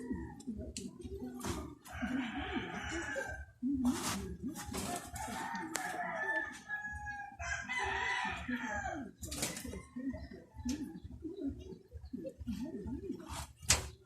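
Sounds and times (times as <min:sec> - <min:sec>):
roosters crowing: 0:00.0 - 0:00.8, 0:01.4 - 0:11.2.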